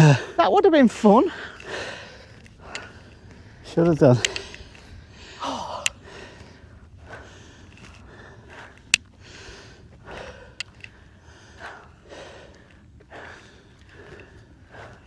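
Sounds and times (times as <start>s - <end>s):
person breathing hard: 1.3s - 15.0s
sharp clicks: 1.5s - 5.0s, 8.7s - 9.1s, 10.5s - 11.0s.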